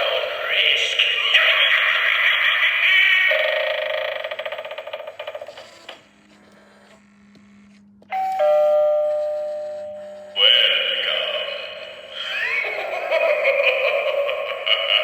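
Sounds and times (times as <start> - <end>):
doorbell chime: 8.1 - 10.2.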